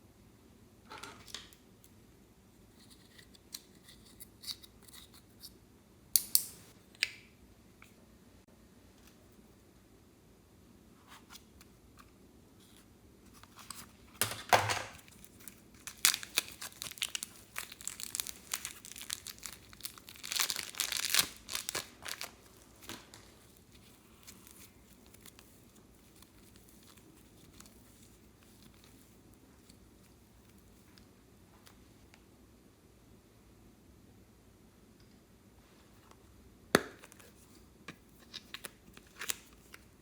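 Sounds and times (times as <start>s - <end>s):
slime crackling and popping: 15.2s - 23.3s.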